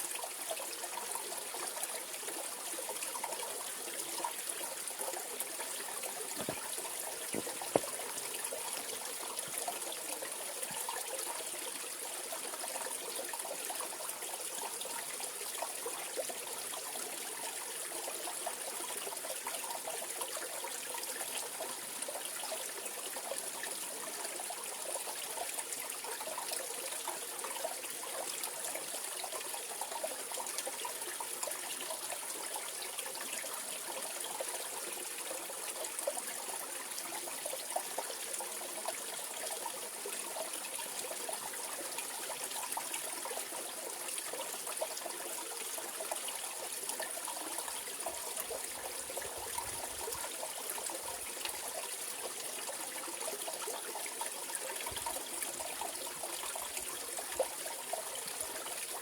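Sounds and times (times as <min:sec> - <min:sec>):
stream running over rocks: 0:00.0 - 0:59.0.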